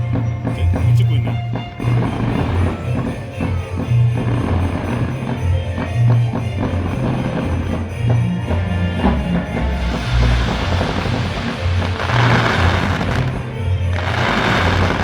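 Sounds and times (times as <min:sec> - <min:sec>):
music with heavy bass line: 0:06.6 - 0:15.0.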